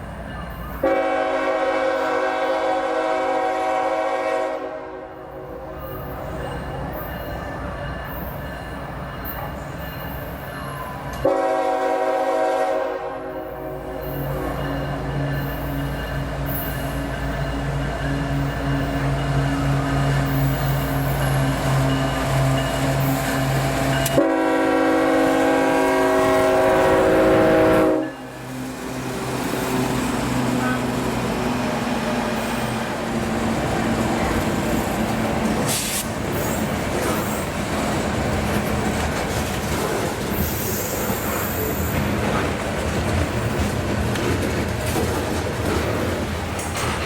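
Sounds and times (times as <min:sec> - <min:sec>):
freight train rumbling: 0:00.0 - 0:47.0
locomotive air horn: 0:00.8 - 0:05.3, 0:11.2 - 0:14.6, 0:24.0 - 0:28.3
locomotive engine humming: 0:05.7 - 0:40.4.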